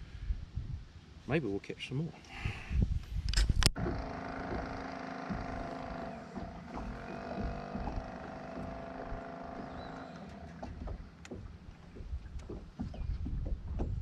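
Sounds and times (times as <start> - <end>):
boat motor running: 3.6 - 14.0.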